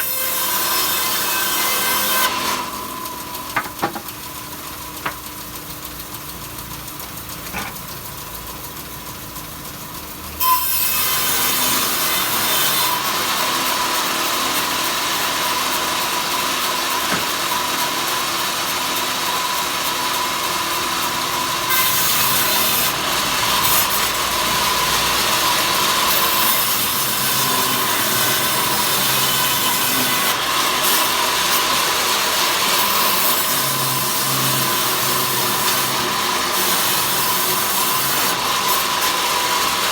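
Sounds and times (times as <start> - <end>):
power saw cutting wood: 0.0 - 39.9.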